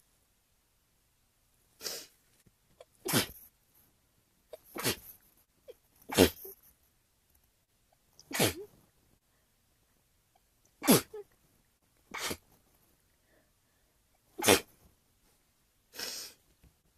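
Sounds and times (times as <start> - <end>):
person sneezing: 1.8 - 2.1, 2.8 - 3.5, 4.6 - 5.2, 6.1 - 6.6, 8.2 - 8.7, 10.8 - 11.2, 12.1 - 12.5, 14.4 - 14.8, 16.0 - 16.4.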